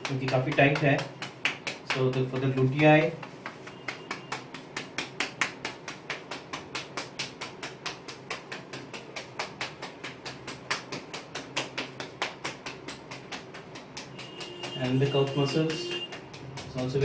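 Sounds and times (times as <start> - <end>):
rapid tapping on muscles: 0.0 - 17.0.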